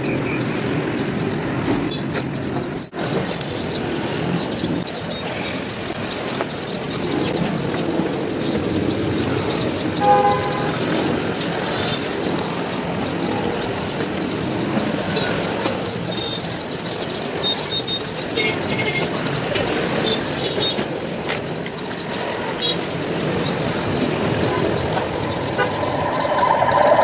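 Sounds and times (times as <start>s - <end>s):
street traffic: 0.0s - 27.0s
car horn toot: 10.0s - 10.9s
high beeps: 24.5s - 27.0s.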